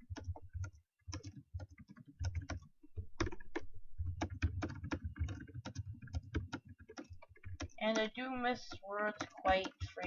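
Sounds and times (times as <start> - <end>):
fast typing on keyboard: 0.0 - 10.0.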